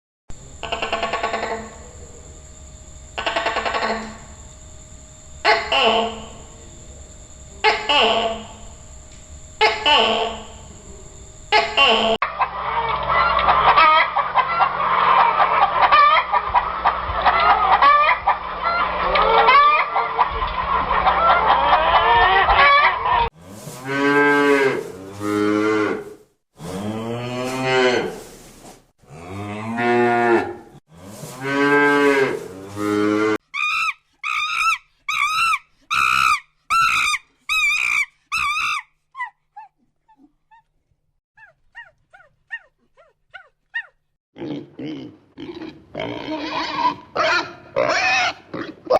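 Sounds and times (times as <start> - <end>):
poultry calling: 0.6 - 1.8, 3.1 - 4.4, 11.5 - 23.3
goose honks: 3.2 - 4.1
cow mooing: 23.8 - 28.2, 29.1 - 33.4.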